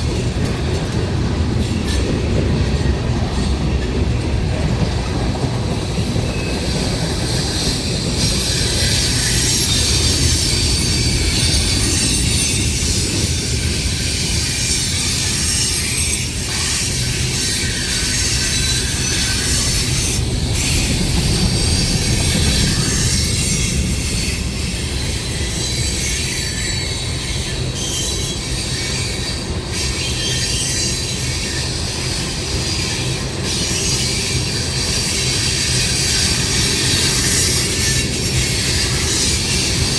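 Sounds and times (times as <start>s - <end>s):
train wheels rumbling on rail: 0.0s - 39.9s
high-pitched wheel squeal: 6.0s - 31.8s.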